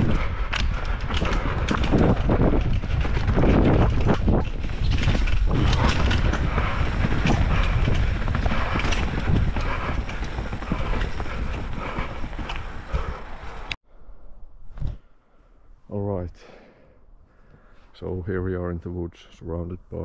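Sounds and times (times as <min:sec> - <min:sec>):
chain and frame rattling: 0:00.0 - 0:13.1
bike tyres on dirt: 0:00.0 - 0:13.8
wind rush on microphone: 0:00.0 - 0:13.8.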